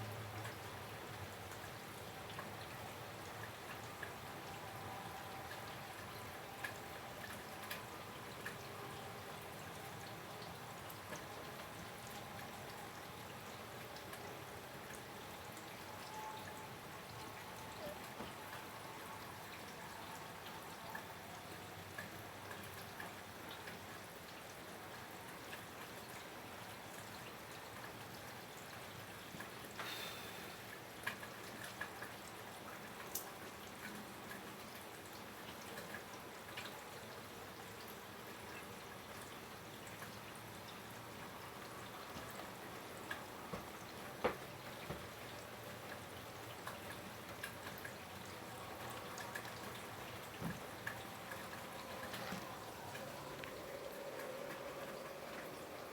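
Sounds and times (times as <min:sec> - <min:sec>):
steady rain: 0:00.0 - 0:55.9
water dripping and tapping: 0:16.4 - 0:18.7, 0:21.9 - 0:24.6, 0:31.0 - 0:36.8, 0:38.4 - 0:55.8.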